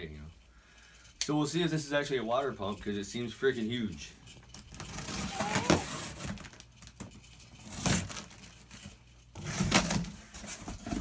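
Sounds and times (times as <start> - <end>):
cardboard box tearing: 5.1 - 6.2.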